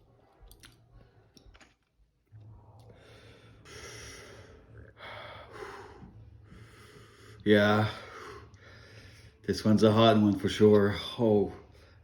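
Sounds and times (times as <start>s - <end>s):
person breathing hard through mouth: 2.9s - 7.4s.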